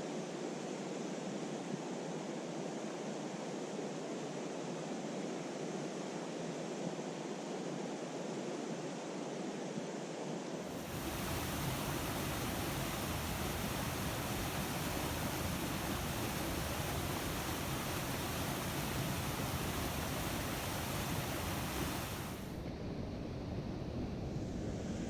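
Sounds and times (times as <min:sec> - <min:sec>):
mountain stream flowing water: 0:10.7 - 0:22.6.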